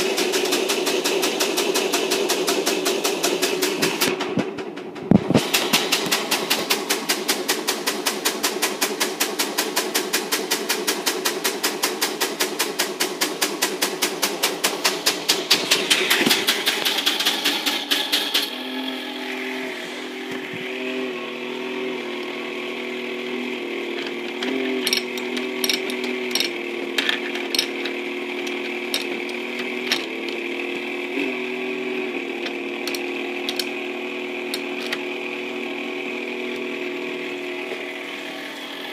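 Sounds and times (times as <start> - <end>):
fast clicking toy mechanism: 0.0 - 4.4, 5.2 - 18.5, 23.9 - 30.5, 32.4 - 33.9, 34.5 - 35.1
toy motor and gear whir: 23.9 - 30.5, 32.4 - 33.8, 34.5 - 35.0.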